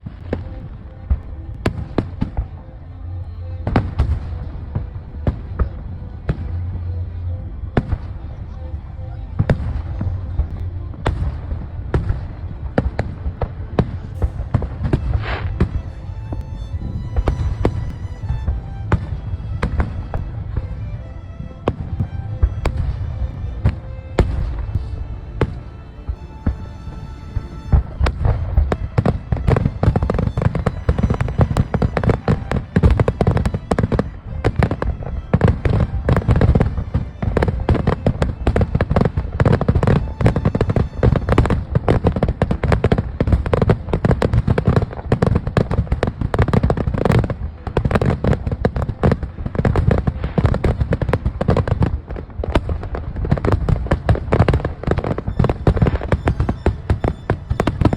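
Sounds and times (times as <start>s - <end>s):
fireworks banging: 0.0s - 7.2s, 9.4s - 57.9s
low rumble: 0.0s - 42.3s
background music: 0.0s - 57.9s
fireworks crackling: 0.0s - 57.9s.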